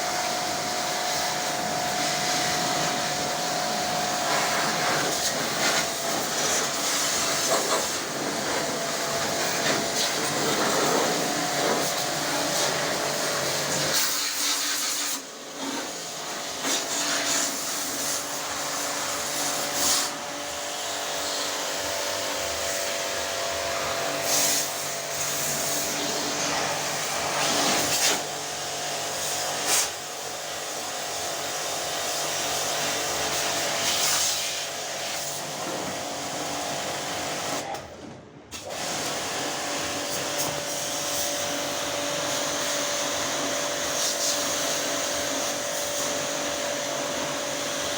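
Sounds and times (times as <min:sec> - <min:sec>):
pressure washer pump running: 0:00.0 - 0:37.8, 0:38.5 - 0:47.9.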